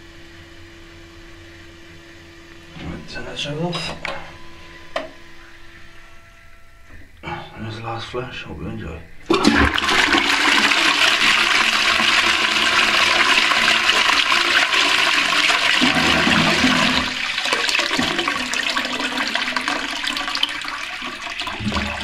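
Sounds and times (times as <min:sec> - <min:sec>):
toilet flushing: 0:09.2 - 0:22.0.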